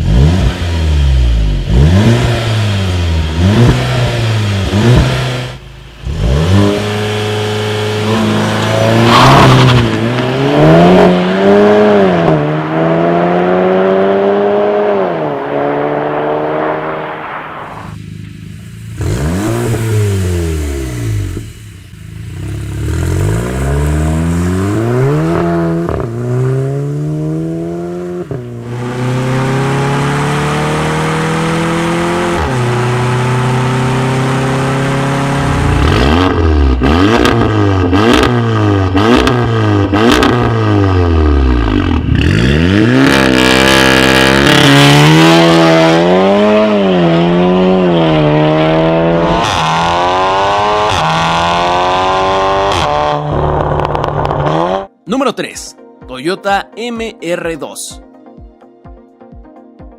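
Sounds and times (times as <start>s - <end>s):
car engine revving and accelerating: 0.0s - 18.0s, 18.8s - 54.9s
exhaust pops and crackles: 52.7s - 54.7s.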